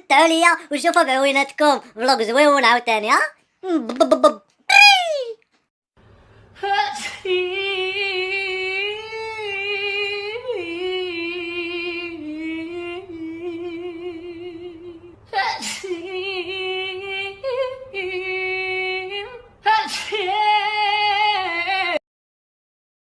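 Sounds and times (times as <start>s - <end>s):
woman singing without words: 6.6s - 22.0s.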